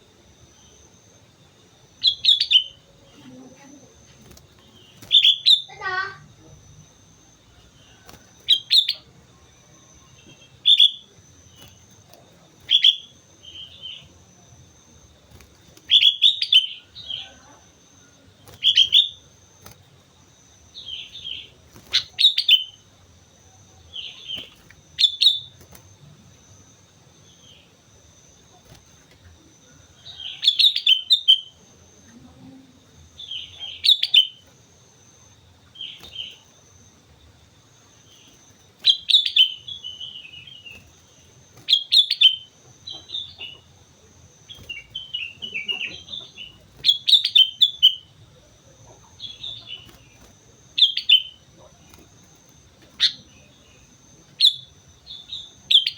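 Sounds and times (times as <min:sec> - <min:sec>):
bulbul singing short calls: 0:01.9 - 0:07.0, 0:09.9 - 0:14.2, 0:15.3 - 0:17.6, 0:18.4 - 0:19.9, 0:20.6 - 0:23.1, 0:23.8 - 0:25.8, 0:29.9 - 0:31.6, 0:33.2 - 0:34.6, 0:38.0 - 0:55.9.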